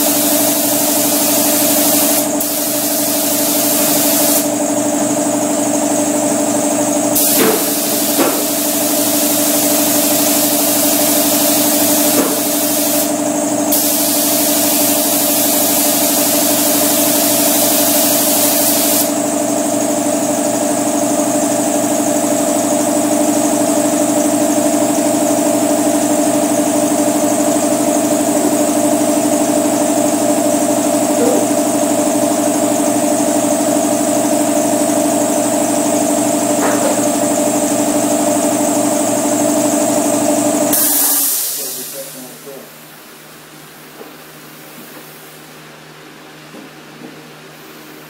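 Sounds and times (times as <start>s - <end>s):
spray gun hiss: 0.0s - 4.6s, 7.2s - 19.2s, 40.7s - 42.4s
air compressor humming: 0.0s - 48.0s.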